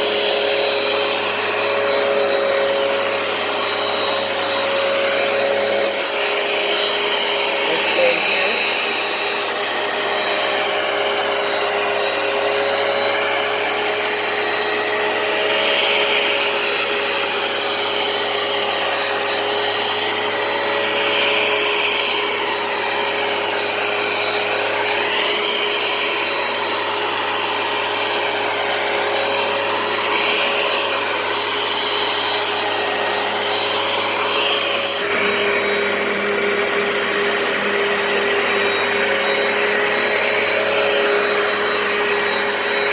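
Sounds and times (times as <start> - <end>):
carpet cleaner motor whine: 0.0 - 42.9.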